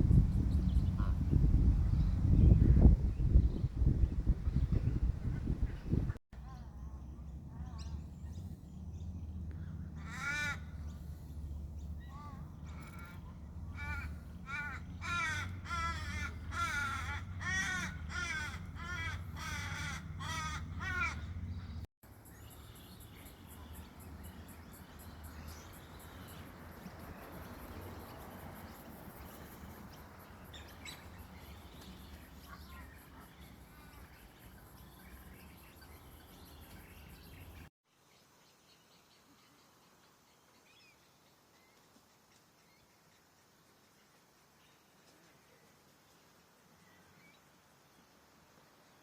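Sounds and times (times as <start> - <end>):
harsh bird calls: 12.0 - 21.8.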